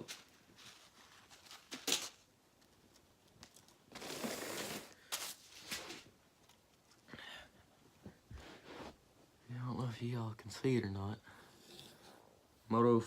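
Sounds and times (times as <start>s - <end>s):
packaging and clothing rustling: 0.0s - 2.3s, 3.5s - 7.0s.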